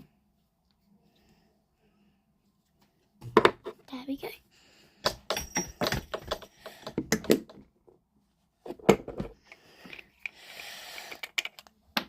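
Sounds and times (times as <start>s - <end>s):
small objects clicking and knocking: 8.8s - 12.0s.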